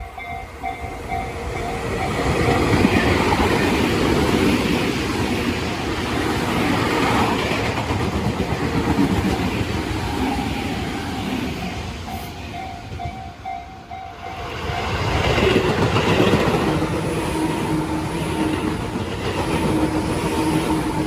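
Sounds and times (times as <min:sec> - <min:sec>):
level crossing warning bell: 0:00.0 - 0:04.3, 0:11.6 - 0:18.6
electric train passing: 0:00.0 - 0:21.0
wheels clattering on rails: 0:00.1 - 0:21.0.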